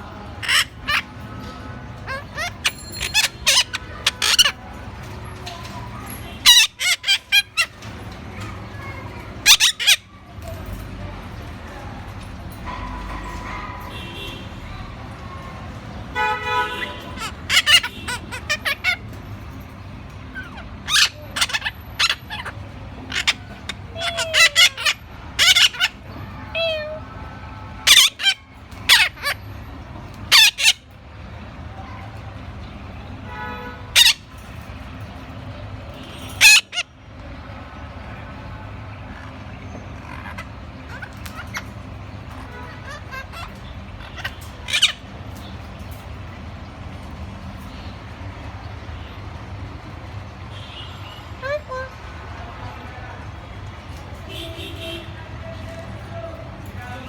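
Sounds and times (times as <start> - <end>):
parrot high-pitched calls: 0.0 - 10.2, 12.6 - 46.3, 51.0 - 52.2.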